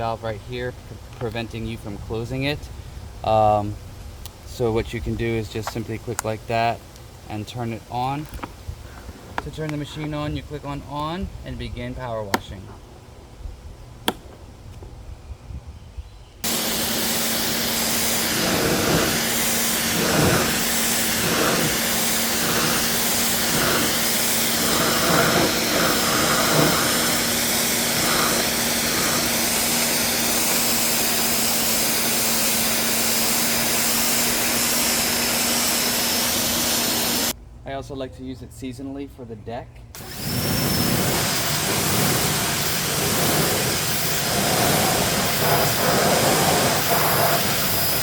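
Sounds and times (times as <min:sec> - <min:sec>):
electric motor hum: 0:16.4 - 0:37.3, 0:40.0 - 0:48.0
high-pressure water jet hissing: 0:16.4 - 0:37.3, 0:40.0 - 0:48.0.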